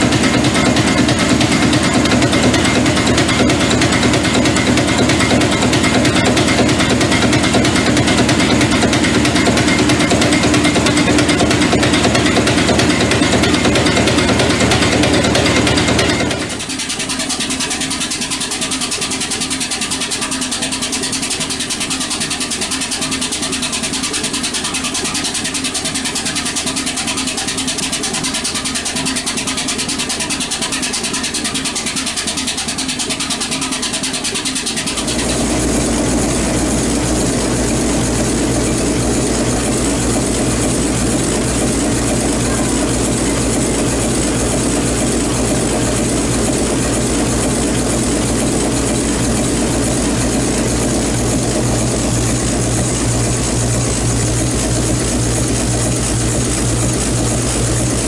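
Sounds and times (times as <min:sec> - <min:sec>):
big engine running: 0:00.0 - 0:17.7, 0:34.9 - 0:58.0
deep heavy engine rumble: 0:35.0 - 0:58.0.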